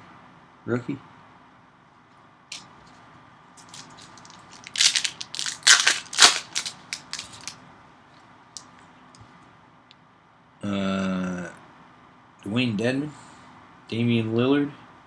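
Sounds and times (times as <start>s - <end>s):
foil wrapper crinkling: 3.6s - 7.6s.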